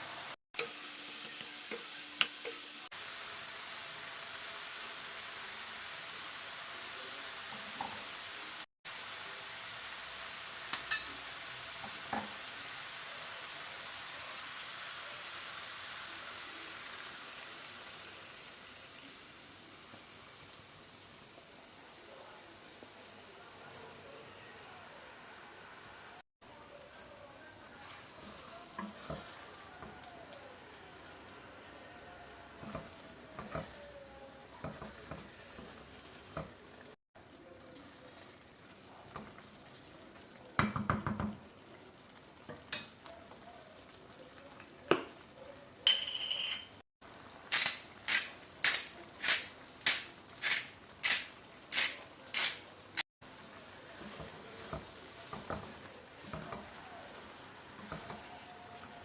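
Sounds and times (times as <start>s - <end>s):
food sizzling in a pan: 0.0s - 59.0s
utensil clinks and scrapes: 47.5s - 53.0s.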